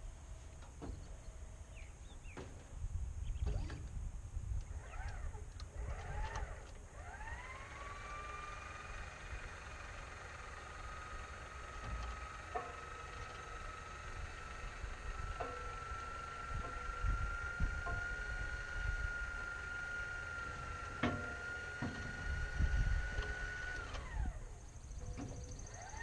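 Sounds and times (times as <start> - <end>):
machine spinning up with whine: 4.6 - 26.0.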